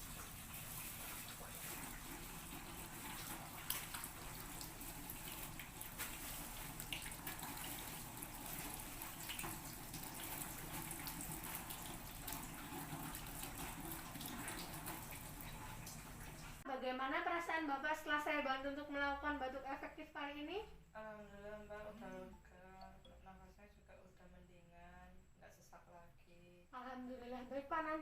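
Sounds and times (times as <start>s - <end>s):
water running from a tap: 0.0s - 16.6s
small splashes and clicks: 2.6s - 16.6s.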